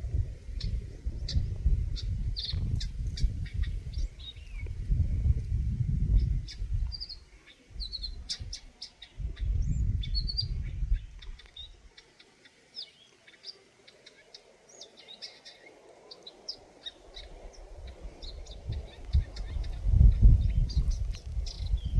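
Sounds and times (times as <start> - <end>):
bird chirping: 6.0 - 21.9.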